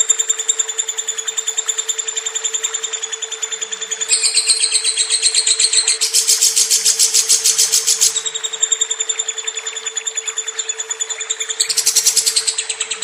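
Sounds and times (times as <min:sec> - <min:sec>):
lovebird chattering: 0:04.1 - 0:13.0.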